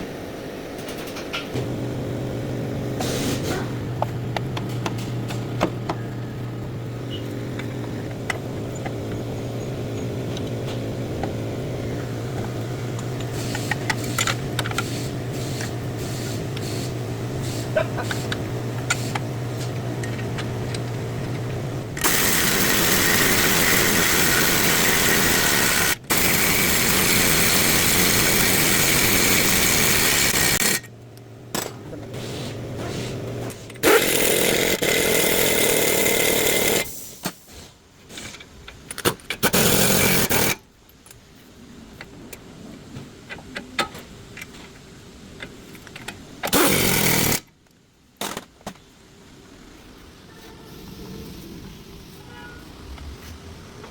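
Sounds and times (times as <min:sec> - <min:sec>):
steady low hum: 0:01.5 - 0:36.9
power tool running: 0:22.0 - 0:30.9, 0:33.8 - 0:36.9, 0:39.4 - 0:40.6, 0:46.5 - 0:47.4.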